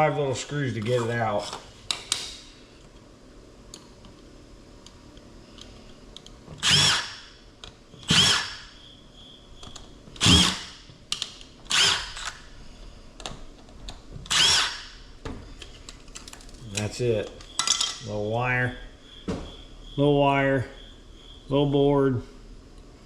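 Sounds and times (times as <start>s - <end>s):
power drill whirring: 6.6s - 7.3s, 8.0s - 8.7s, 10.2s - 10.7s, 11.7s - 12.4s, 14.3s - 15.0s.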